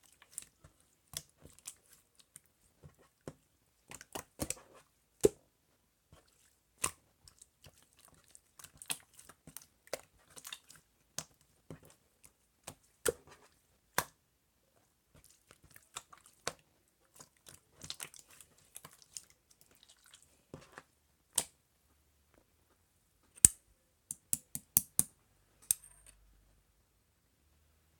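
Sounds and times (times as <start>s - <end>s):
wet clicks and pops: 21.3s - 21.6s.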